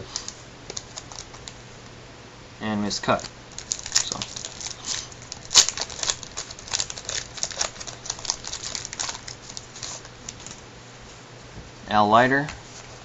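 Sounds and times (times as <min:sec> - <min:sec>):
cards and foil packs crinkling: 0:00.0 - 0:01.6, 0:03.0 - 0:10.6.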